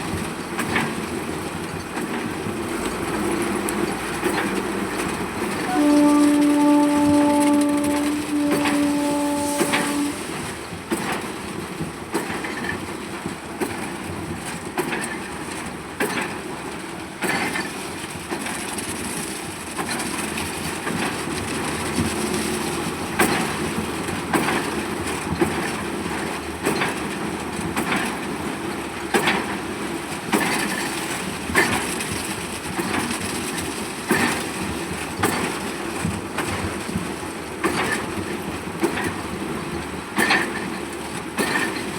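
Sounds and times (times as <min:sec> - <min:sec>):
construction machinery rumbling: 0:00.0 - 0:11.0
horn sounding: 0:05.4 - 0:10.6.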